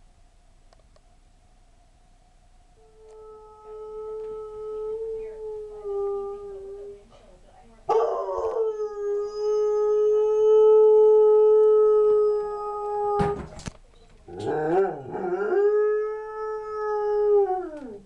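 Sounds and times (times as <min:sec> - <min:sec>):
dog howling: 0:02.8 - 0:07.0, 0:07.9 - 0:13.4, 0:14.3 - 0:18.0.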